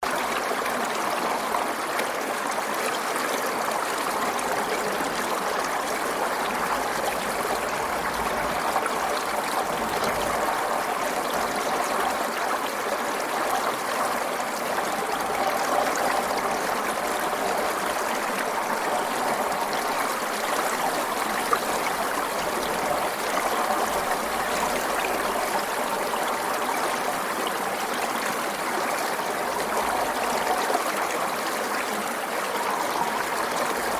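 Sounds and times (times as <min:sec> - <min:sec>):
stream flowing over stones: 0:00.0 - 0:33.9.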